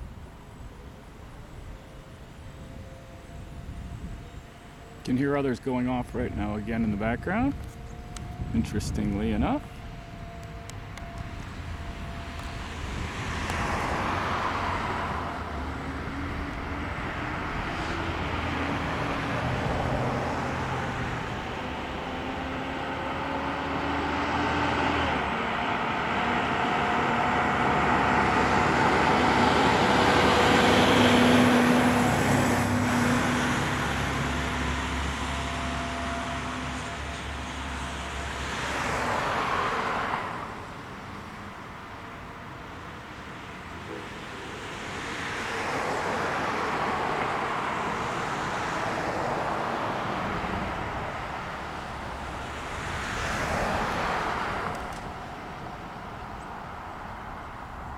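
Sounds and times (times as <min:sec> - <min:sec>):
distant outdoor warning sirens: 0:00.0 - 0:57.9
road traffic passing: 0:00.0 - 0:57.9.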